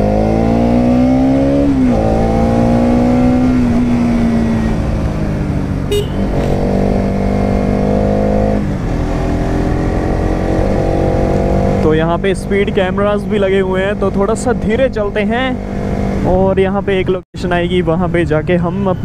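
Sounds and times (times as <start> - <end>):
motorcycle engine revving: 0.0 - 12.0.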